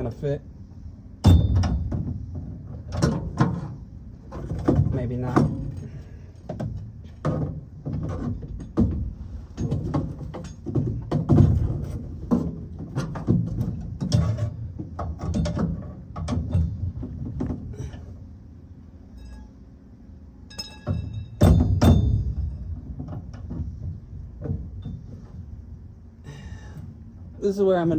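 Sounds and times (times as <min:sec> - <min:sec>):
steady ringing tones: 0:00.0 - 0:01.9, 0:17.8 - 0:23.0
metallic clanks and knocks: 0:01.2 - 0:18.1, 0:20.5 - 0:25.4.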